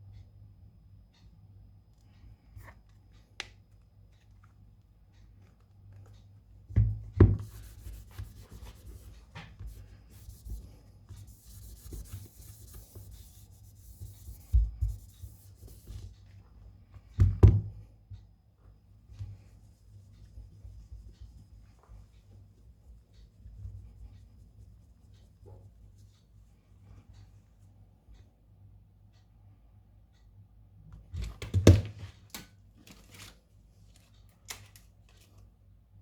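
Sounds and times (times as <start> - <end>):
scratchy rubbing: 7.4 - 16.0.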